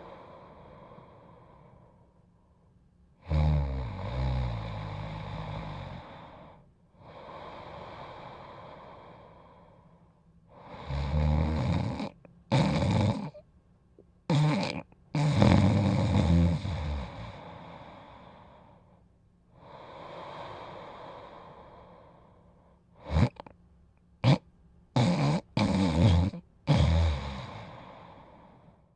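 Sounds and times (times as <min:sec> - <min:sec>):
dog snoring: 0:03.2 - 0:09.6, 0:10.5 - 0:13.4, 0:14.3 - 0:18.7, 0:23.0 - 0:23.5, 0:24.2 - 0:28.7.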